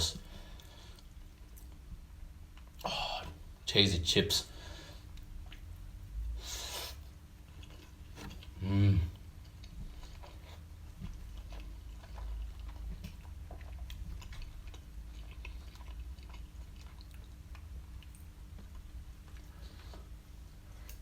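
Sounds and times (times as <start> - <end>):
close-up chewing: 7.4 - 21.0.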